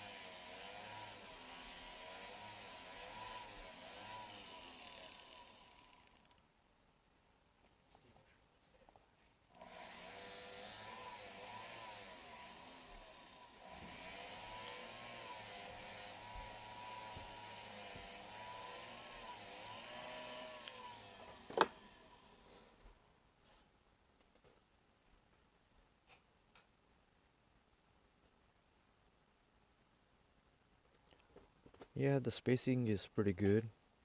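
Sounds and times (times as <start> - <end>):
rotary tool grinding metal: 0.0 - 6.4, 9.6 - 22.8.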